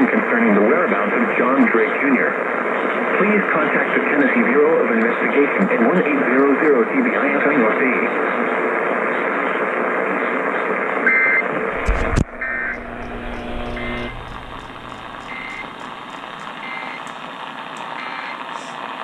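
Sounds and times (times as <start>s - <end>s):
radio reception hiss: 0.0s - 10.4s, 11.4s - 19.0s
buzzy two-tone data bursts: 11.7s - 17.1s.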